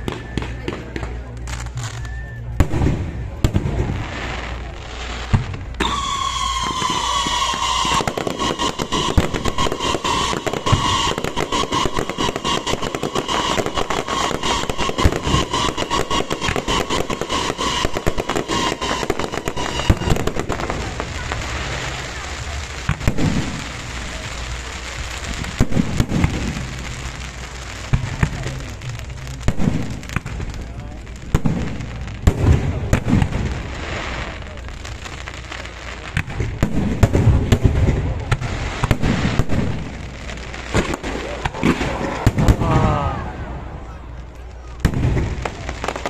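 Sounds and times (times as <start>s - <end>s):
fireworks crackling bangs: 0.0s - 46.0s
voices: 0.0s - 46.0s
descending whistle: 1.9s - 2.6s.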